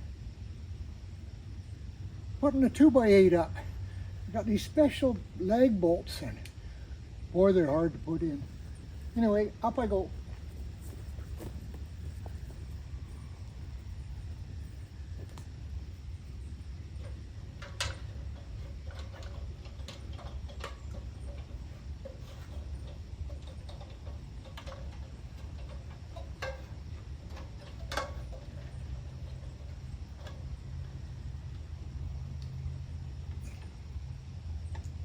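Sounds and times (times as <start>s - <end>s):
steady low rumble: 0.0s - 35.0s
sharp clicks and knocks: 17.0s - 31.0s.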